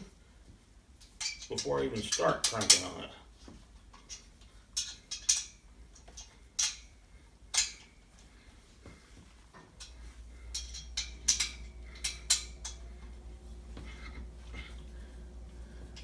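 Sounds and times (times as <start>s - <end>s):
allen wrench clinking on metal: 1.0s - 3.1s, 3.9s - 6.9s, 7.5s - 8.0s, 9.8s - 13.0s.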